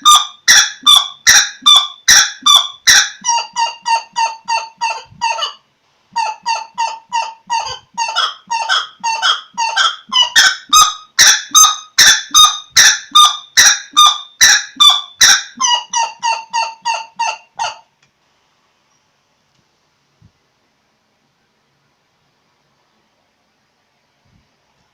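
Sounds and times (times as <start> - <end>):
bird ringing calls: 0.0 - 5.0, 6.2 - 16.8.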